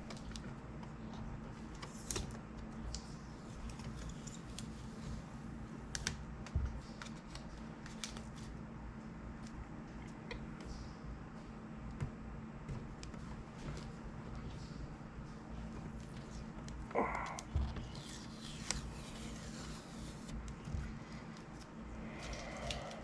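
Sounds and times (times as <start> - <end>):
faint steady hum: 0.0 - 23.0
tape peeling clicks and crackles: 5.9 - 8.5.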